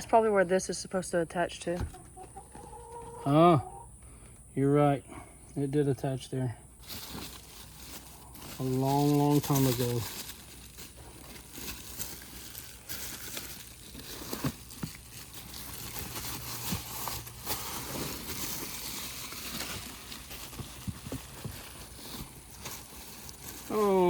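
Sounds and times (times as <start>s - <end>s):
packing material crinkling: 6.8s - 24.0s.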